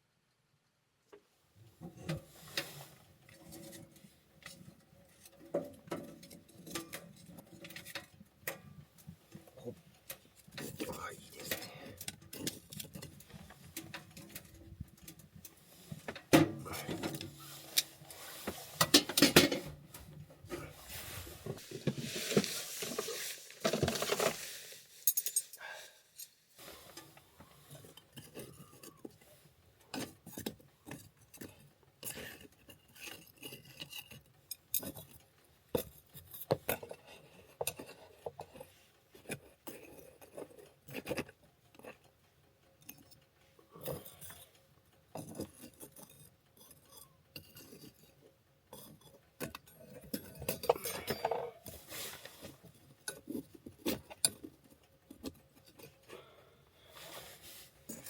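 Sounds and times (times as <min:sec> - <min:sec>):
tableware clinking: 0:50.2 - 0:51.6.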